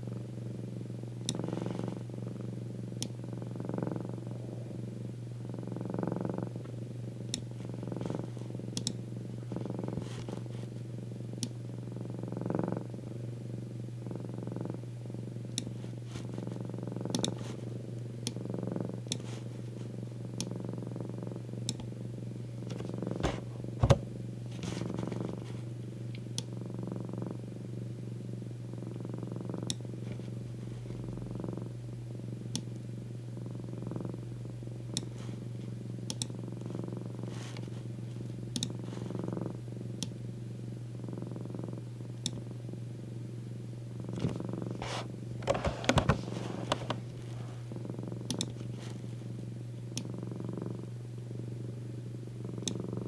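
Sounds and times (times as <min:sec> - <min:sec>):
cat purring: 0:00.0 - 0:43.3, 0:43.9 - 0:51.0, 0:51.6 - 0:53.0
faint clicks: 0:06.6 - 0:09.0, 0:17.1 - 0:17.4, 0:36.1 - 0:36.4, 0:38.5 - 0:38.8, 0:48.2 - 0:48.9, 0:52.6 - 0:52.8.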